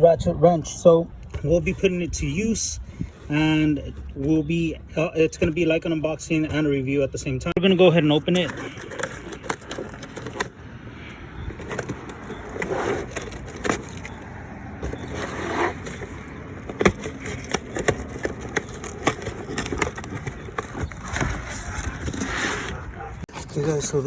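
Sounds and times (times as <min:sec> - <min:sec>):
packaging scraping and crinkling: 0:07.8 - 0:10.6, 0:11.2 - 0:24.0
packaging clicks and taps: 0:14.8 - 0:22.2.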